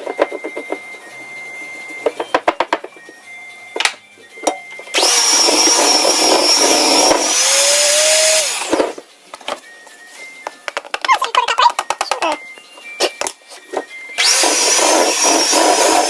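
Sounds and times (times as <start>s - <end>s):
electric mixer whining: 4.9s - 9.0s, 14.2s - 16.0s.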